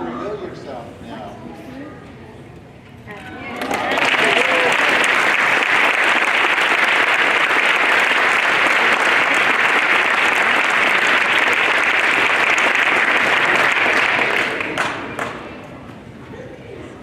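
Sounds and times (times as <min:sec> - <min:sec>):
children clapping: 0:03.6 - 0:15.5.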